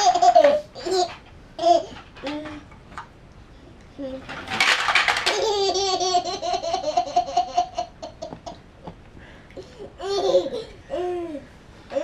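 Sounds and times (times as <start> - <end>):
baby laughing: 0.0 - 2.0, 5.2 - 8.6, 9.9 - 12.0.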